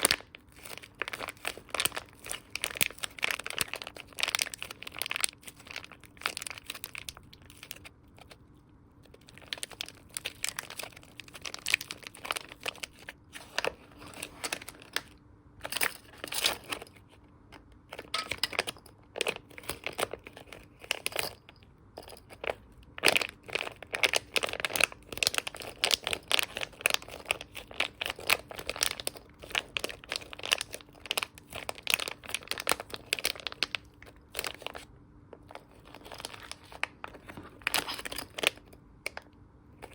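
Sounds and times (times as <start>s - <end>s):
squishy toys crackling: 0.0s - 8.4s, 9.0s - 13.8s, 23.0s - 34.8s.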